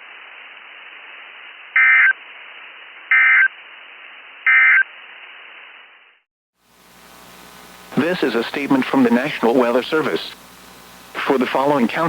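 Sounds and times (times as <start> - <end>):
radio hiss: 0.0 - 12.0
digital data tone bursts: 1.8 - 2.2, 3.1 - 3.5.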